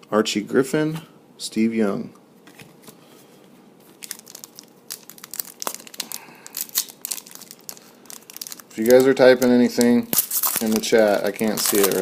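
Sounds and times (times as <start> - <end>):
foil wrapper crinkling: 3.8 - 12.0.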